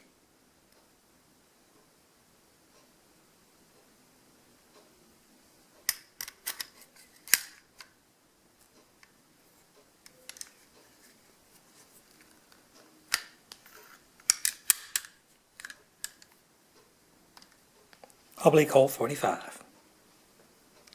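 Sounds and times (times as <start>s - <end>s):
cap revolver mechanism clicking: 14.2s - 16.2s.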